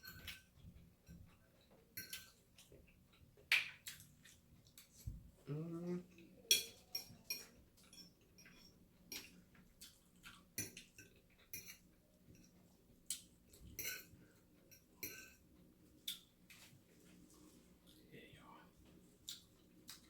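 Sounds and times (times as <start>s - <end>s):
chewing chicken: 0.2s - 14.6s, 18.8s - 20.0s.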